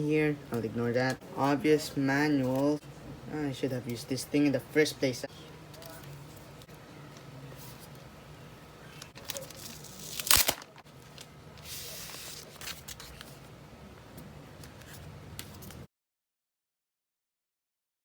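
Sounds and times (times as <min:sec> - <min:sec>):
paper ripping: 0:09.2 - 0:13.4.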